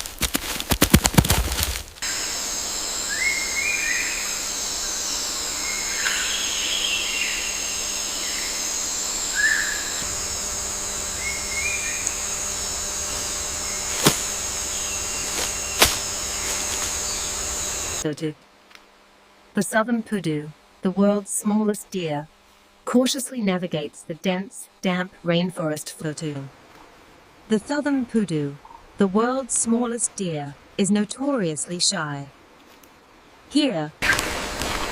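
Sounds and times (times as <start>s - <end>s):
high-pitched drone: 2.0s - 18.1s.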